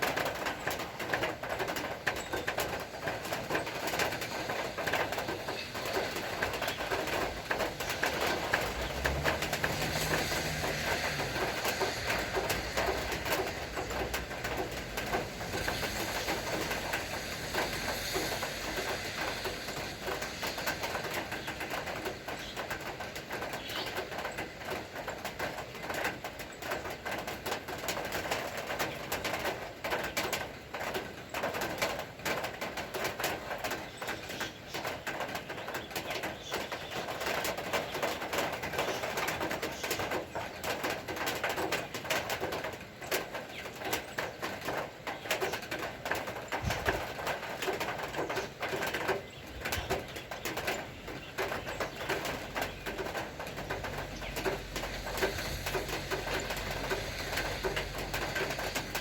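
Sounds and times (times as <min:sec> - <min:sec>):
steady rain falling: 0:00.0 - 0:59.0
birds calling: 0:33.6 - 0:59.0.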